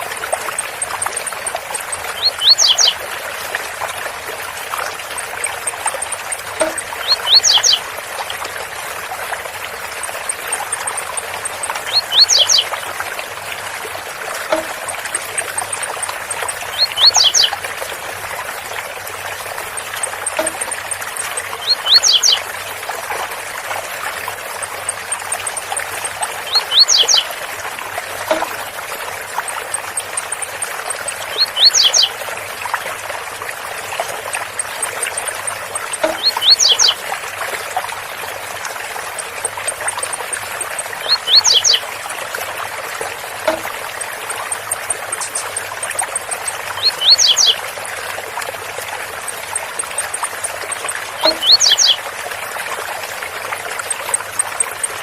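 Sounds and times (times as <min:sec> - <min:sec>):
bird song: 0:00.4 - 0:03.0, 0:05.2 - 0:07.9, 0:10.0 - 0:12.9, 0:14.5 - 0:17.7, 0:19.6 - 0:22.5, 0:24.6 - 0:27.4, 0:29.4 - 0:32.2, 0:34.4 - 0:37.0, 0:39.1 - 0:41.9, 0:43.5 - 0:47.6, 0:49.4 - 0:52.0.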